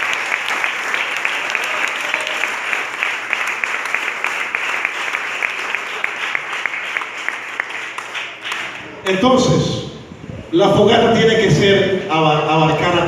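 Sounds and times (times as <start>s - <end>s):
crowd applauding: 0.0s - 9.0s.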